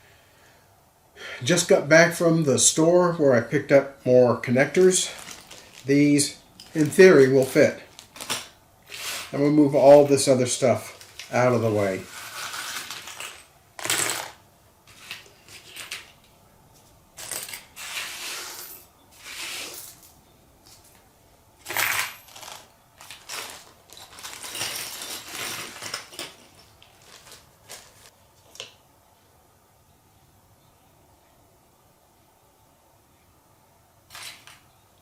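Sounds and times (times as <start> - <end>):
hard objects clattering and clinking: 5.2 - 5.9, 21.6 - 28.1.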